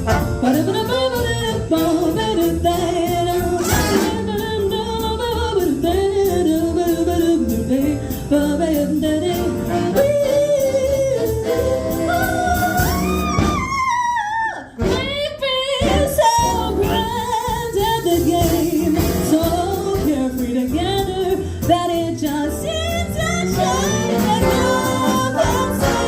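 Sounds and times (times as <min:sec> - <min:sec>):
big band playing jazz: 0:00.0 - 0:26.0
bending lead melody: 0:18.3 - 0:26.0.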